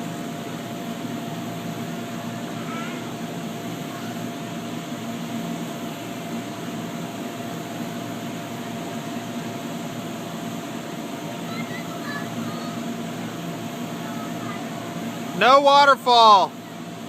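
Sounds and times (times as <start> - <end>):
boat motor humming: 5.6 - 17.0.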